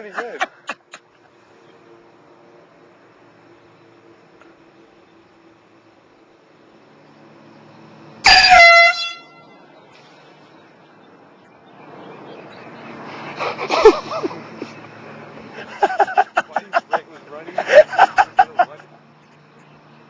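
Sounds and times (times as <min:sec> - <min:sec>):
air horn blast: 0:08.2 - 0:09.6.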